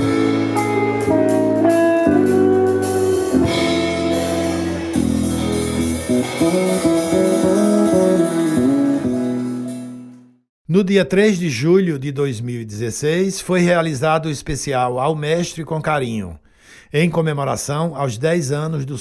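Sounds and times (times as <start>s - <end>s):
instrumental music with sustained chords: 0.0s - 10.4s.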